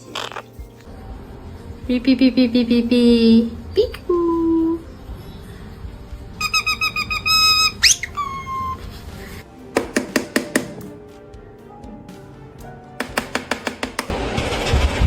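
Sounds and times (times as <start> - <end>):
parrot mimicking electronic beeps: 6.4 - 8.8
parrot whistle rising in pitch: 6.4 - 8.8.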